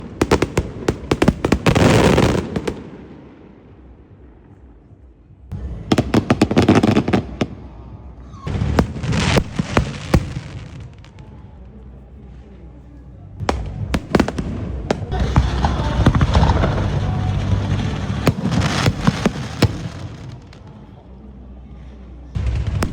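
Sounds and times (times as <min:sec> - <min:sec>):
fireworks crackling and popping: 0:00.0 - 0:04.9, 0:05.9 - 0:11.3, 0:13.4 - 0:20.8, 0:22.4 - 0:22.9.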